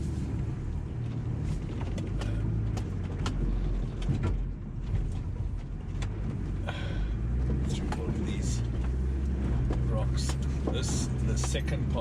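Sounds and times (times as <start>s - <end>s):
vehicle engine crawling over rock: 0.0s - 12.0s
sharp clicks and knocks: 1.6s - 6.6s, 7.3s - 11.9s.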